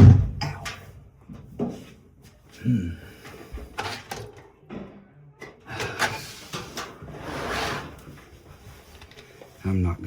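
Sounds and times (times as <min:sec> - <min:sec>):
handling knocks and clunks: 0:00.0 - 0:01.9.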